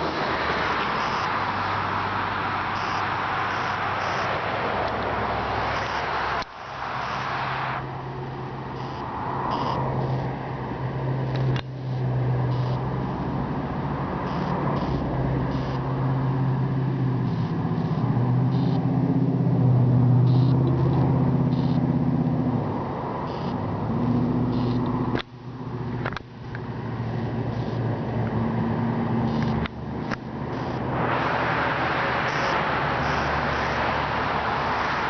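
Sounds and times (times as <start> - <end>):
engine running with low hum: 0.0 - 35.0
sharp clicks: 29.3 - 30.8.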